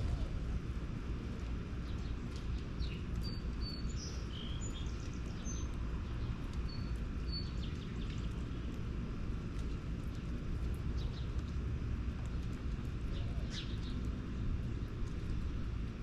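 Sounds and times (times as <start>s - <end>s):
low outdoor rumble: 0.0s - 16.0s
small birds chirping: 1.8s - 8.8s, 10.9s - 11.5s, 12.2s - 14.1s.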